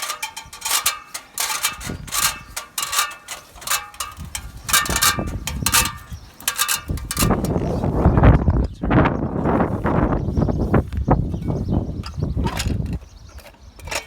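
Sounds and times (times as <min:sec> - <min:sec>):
metal ladder clanking: 0:00.0 - 0:07.6.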